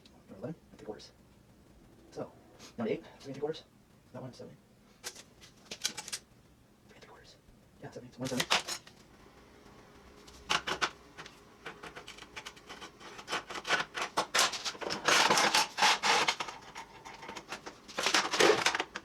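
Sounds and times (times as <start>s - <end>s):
scratching on steel can: 11.7s - 19.0s.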